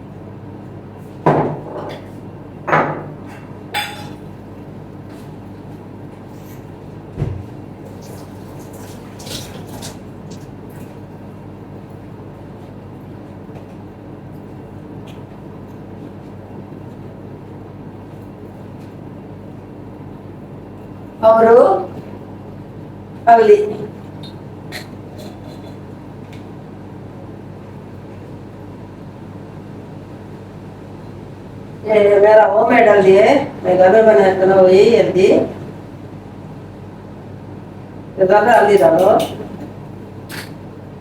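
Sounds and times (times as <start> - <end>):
kitchen utensils knocking and clinking: 3.8 - 4.2
steady hum: 19.2 - 41.0.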